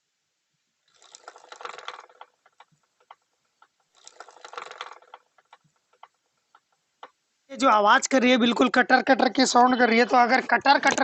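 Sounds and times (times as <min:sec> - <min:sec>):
motorcycle chain clattering: 0:00.9 - 0:02.7, 0:03.9 - 0:05.6.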